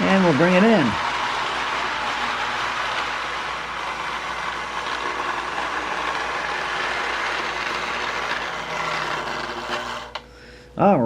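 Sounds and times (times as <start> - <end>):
model train whirring on track: 0.0 - 10.3.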